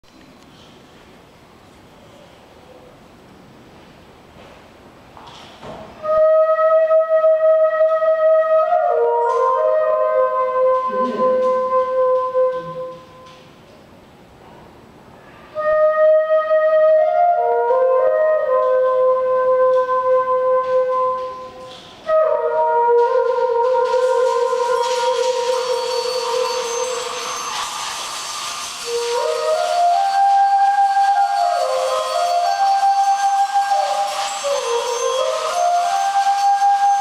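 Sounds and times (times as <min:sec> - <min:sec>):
flute-like wind tones: 0:06.0 - 0:13.5, 0:15.1 - 0:37.0.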